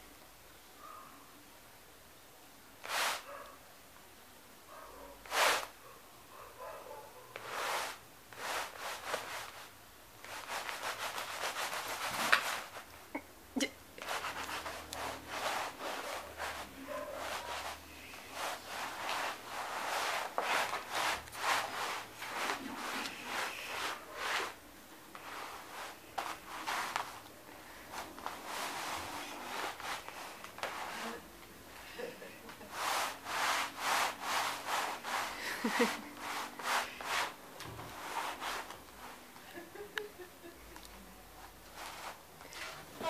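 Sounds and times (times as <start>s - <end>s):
scratching on carpet: 2.8s - 3.4s, 5.2s - 5.7s, 7.3s - 13.0s, 14.0s - 31.8s, 32.6s - 39.3s, 41.4s - 43.0s.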